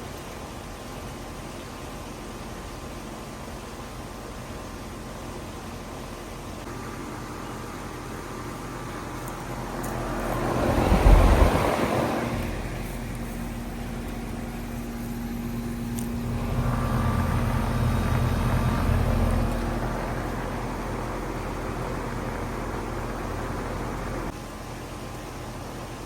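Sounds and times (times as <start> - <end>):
heat pump running: 0.0 - 26.0
vehicle passing by: 9.0 - 24.3.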